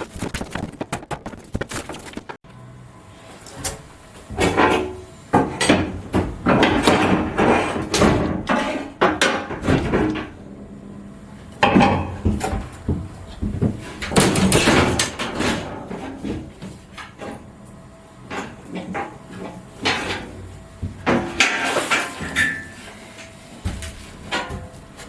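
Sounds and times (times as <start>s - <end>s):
knocking banging and clattering: 0.0s - 2.4s, 11.6s - 16.6s.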